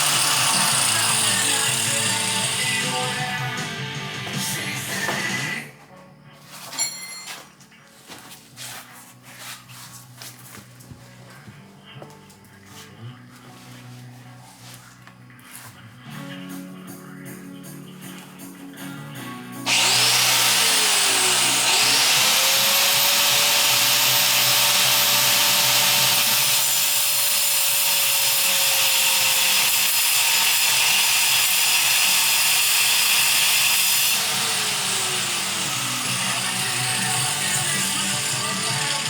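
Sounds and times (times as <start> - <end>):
electric power tool cutting metal: 0.0 - 3.6, 19.7 - 39.0.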